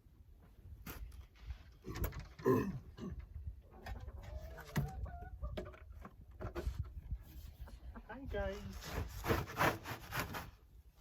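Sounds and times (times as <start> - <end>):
chickens clucking: 3.1 - 8.3.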